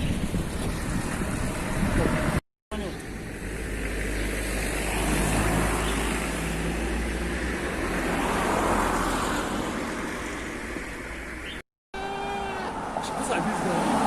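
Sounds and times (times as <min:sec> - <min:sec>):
traffic rumble and tyre hiss: 0:00.0 - 0:14.0
vehicle passing: 0:03.2 - 0:11.5, 0:12.1 - 0:14.0.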